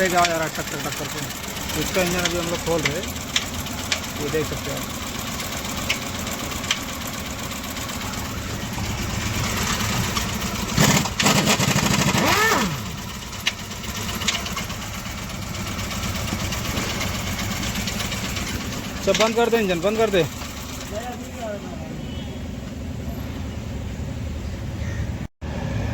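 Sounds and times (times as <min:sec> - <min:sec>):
engine knocking: 0:00.0 - 0:21.8
petrol engine idling: 0:00.0 - 0:25.9.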